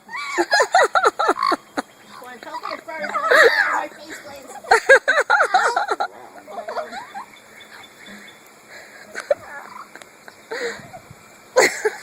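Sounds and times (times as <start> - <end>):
parrot warbling chatter: 1.2 - 3.8, 9.5 - 10.0.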